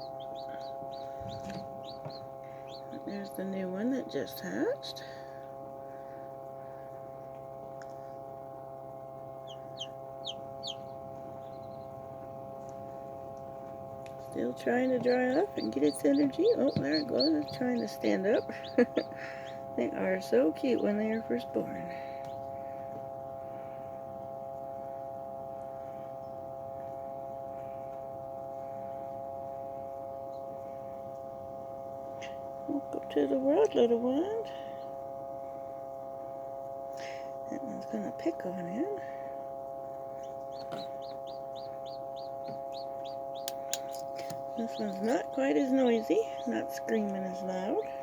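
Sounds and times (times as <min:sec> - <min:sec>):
baby chick peeping: 0:00.0 - 0:04.3, 0:09.4 - 0:11.9, 0:14.4 - 0:22.4, 0:40.2 - 0:47.9
incubator electrical hum: 0:00.0 - 0:48.0.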